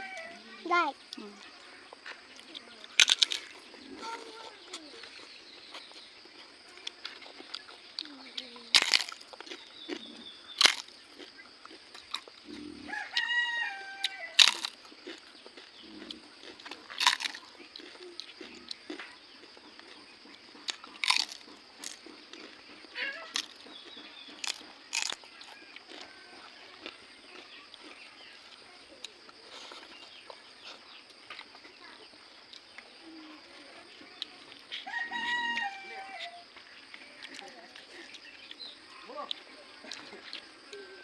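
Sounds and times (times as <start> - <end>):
quiet chewing: 0.0 - 41.0
crisp cracker crunching: 2.4 - 13.2, 14.0 - 31.6.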